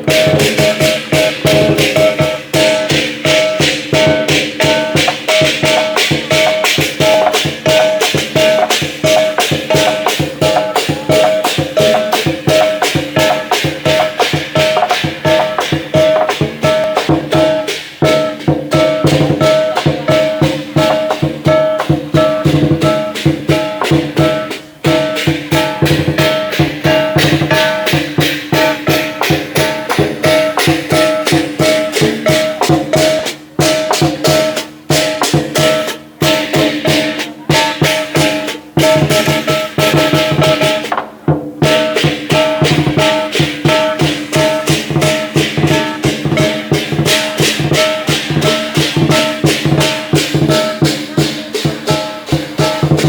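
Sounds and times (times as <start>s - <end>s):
gongs ringing: 0.0s - 40.9s, 41.6s - 53.0s
big drum beaten fast: 0.0s - 53.0s
cymbals clashing: 0.0s - 53.0s.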